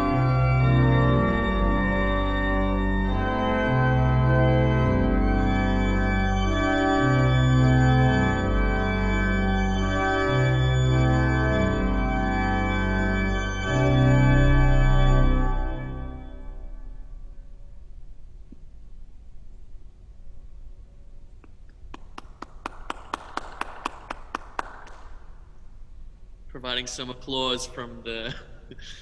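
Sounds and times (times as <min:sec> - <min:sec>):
pipe organ playing chords: 0:00.0 - 0:18.0.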